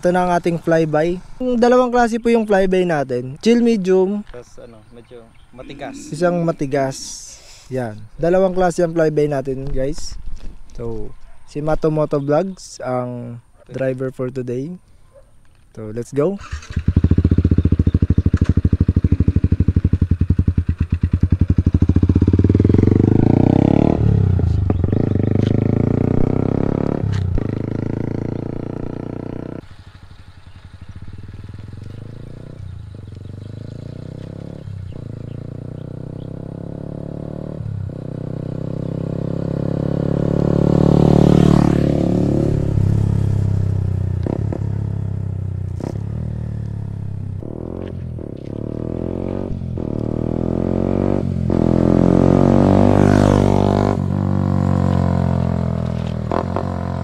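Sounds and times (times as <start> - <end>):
motorcycle passing by: 16.4 - 57.0
motorcycle pulling away: 16.4 - 57.0.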